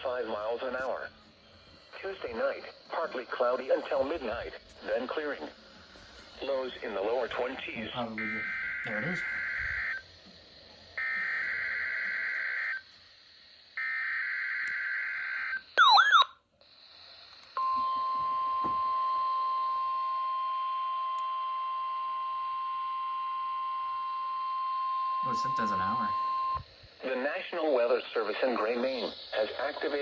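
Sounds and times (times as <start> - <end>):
harsh buzzing data bursts: 1.0 - 16.2, 25.2 - 30.0
loud warbling chirp: 15.8 - 16.3.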